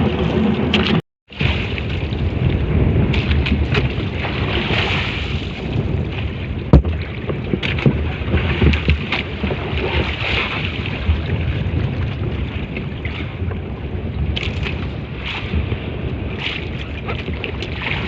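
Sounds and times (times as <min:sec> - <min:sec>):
wind buffeting microphone: 0:00.0 - 0:18.0
knocks on boat: 0:06.7 - 0:12.1.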